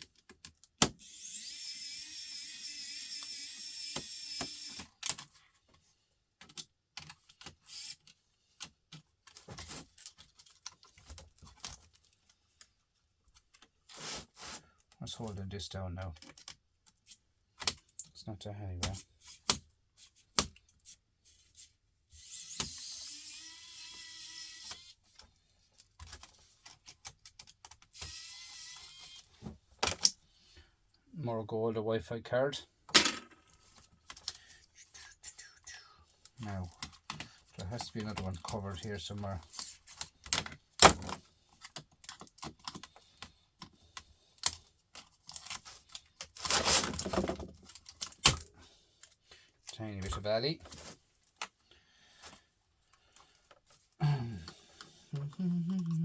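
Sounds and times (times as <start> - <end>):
small motor whirring: 1.0 - 4.9, 22.2 - 25.0, 28.0 - 29.3.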